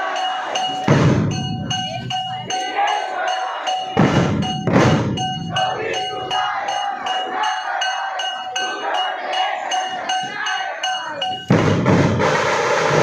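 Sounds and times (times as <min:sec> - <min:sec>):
metallic percussion strikes: 0:00.0 - 0:13.0
low drum booms: 0:00.9 - 0:02.1, 0:04.0 - 0:05.6, 0:11.5 - 0:12.4.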